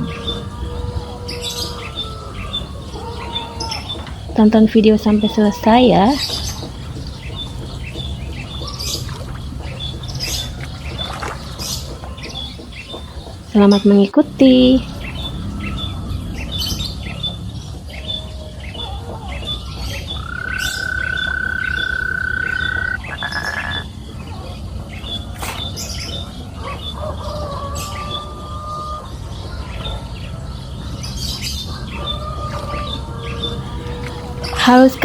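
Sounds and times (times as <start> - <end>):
long steady whistle: 0.0 - 4.4
low steady background rumble: 0.0 - 26.7, 27.8 - 35.0
birds chirping: 0.0 - 35.0.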